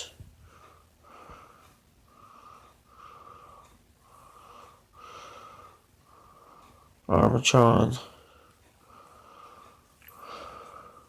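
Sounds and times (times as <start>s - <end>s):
man breathing through nose: 0.4s - 7.0s, 8.2s - 11.0s.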